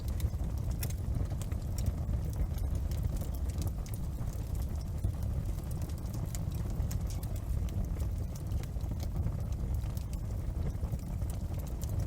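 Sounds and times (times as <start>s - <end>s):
low rumble of flames: 0.0s - 12.0s
wood fire crackling: 0.0s - 12.0s.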